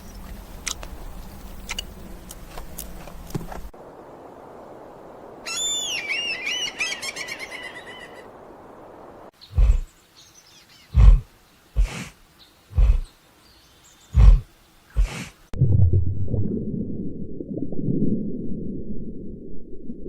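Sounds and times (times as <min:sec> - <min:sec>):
background hiss: 0:00.0 - 0:15.6
bird chirping: 0:09.4 - 0:15.1
large animal grunting: 0:09.6 - 0:09.9, 0:10.9 - 0:12.1, 0:12.8 - 0:13.1, 0:14.2 - 0:15.2.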